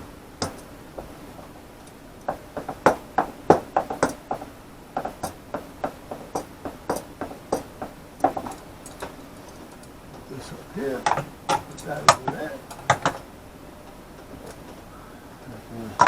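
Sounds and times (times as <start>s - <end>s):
small objects clacking on workbench: 0.4s - 10.3s, 11.0s - 13.3s.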